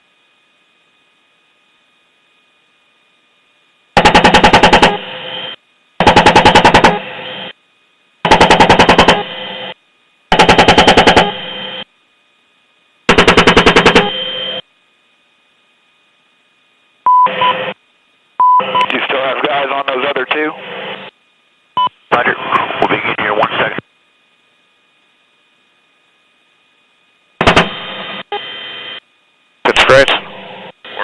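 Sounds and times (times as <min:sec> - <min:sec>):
beep tone: 0:17.1 - 0:17.6, 0:18.4 - 0:18.9
radio transmission: 0:18.4 - 0:21.1, 0:21.8 - 0:23.9, 0:29.6 - 0:31.0.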